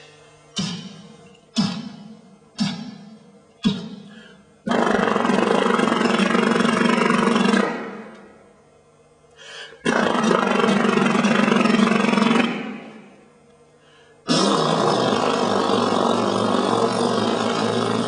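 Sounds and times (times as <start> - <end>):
person making roaring vocal sounds: 3.6 - 4.1, 14.3 - 18.0.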